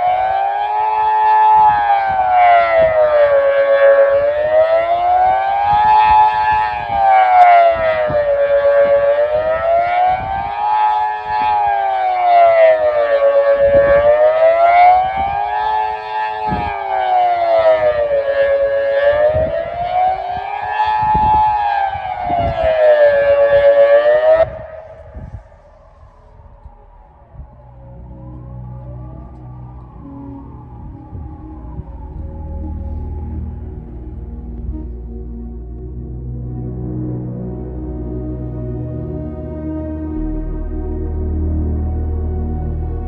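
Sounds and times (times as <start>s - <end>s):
electronic siren wailing: 0.0s - 43.0s
wind buffeting microphone: 0.0s - 43.0s.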